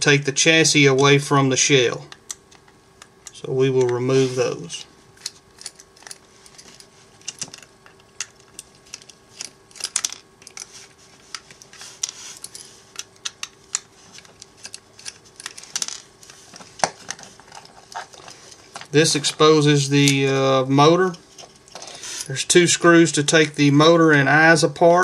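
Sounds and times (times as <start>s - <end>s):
faint steady hum: 0.0s - 25.0s
plastic parts handled: 5.2s - 19.0s.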